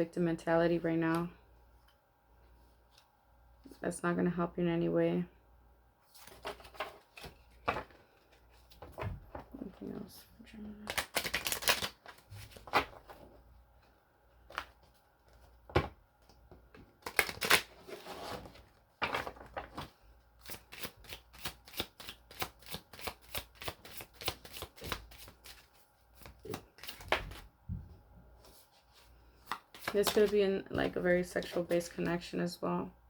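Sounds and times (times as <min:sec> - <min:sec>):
cards being shuffled: 0:06.1 - 0:10.0, 0:10.7 - 0:13.2, 0:17.0 - 0:27.4, 0:28.4 - 0:32.1.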